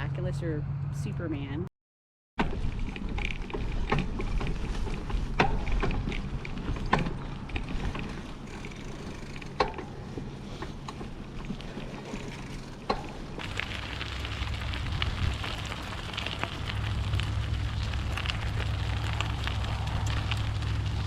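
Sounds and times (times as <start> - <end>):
bicycle tyres rumbling: 2.4 - 21.0
bike rattling over bumps: 2.4 - 21.0
wind on microphone: 13.4 - 21.0.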